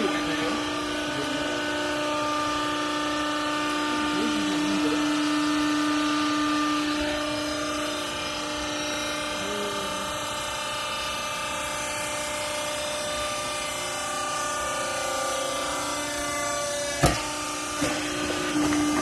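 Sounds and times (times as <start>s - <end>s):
hydraulic baler humming: 0.0s - 19.0s.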